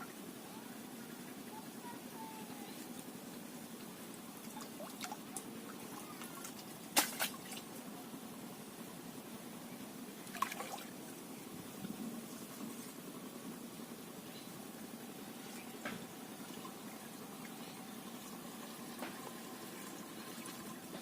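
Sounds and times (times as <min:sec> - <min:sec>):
water splashing: 0:04.4 - 0:07.8, 0:10.2 - 0:11.0.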